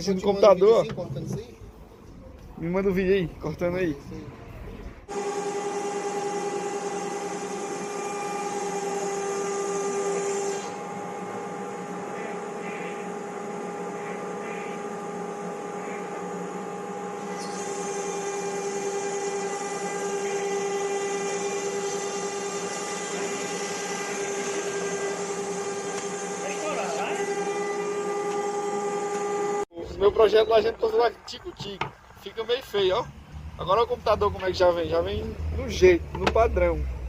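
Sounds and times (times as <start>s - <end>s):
router spindle whine: 5.1s - 33.1s.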